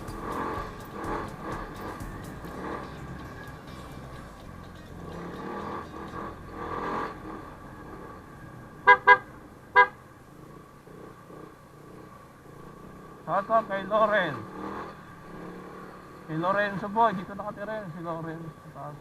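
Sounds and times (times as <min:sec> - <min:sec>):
traffic and engine noise: 0:00.0 - 0:19.0
vehicle horn toots: 0:08.8 - 0:10.0.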